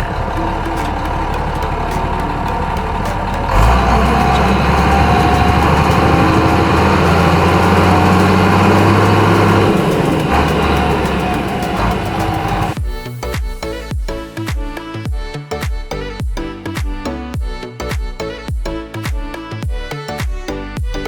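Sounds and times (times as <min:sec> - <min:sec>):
heavy truck engine running: 0:00.0 - 0:12.8.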